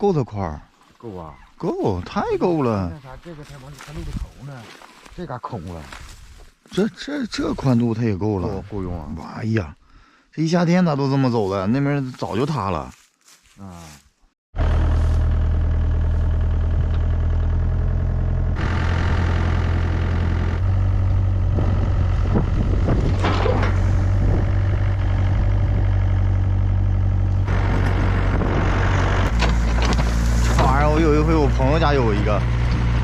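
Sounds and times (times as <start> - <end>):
tractor engine droning: 14.6 - 33.0.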